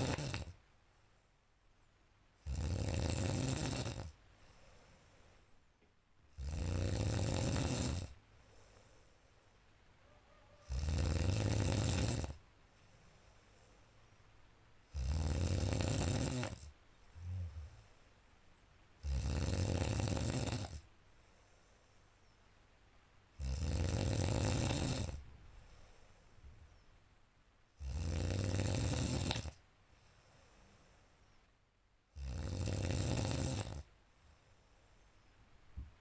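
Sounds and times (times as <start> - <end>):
person snoring loudly: 0.0 - 0.6, 2.4 - 4.2, 6.3 - 8.2, 10.6 - 12.4, 14.9 - 17.8, 19.0 - 20.8, 23.4 - 25.2, 27.8 - 29.6, 32.1 - 33.9.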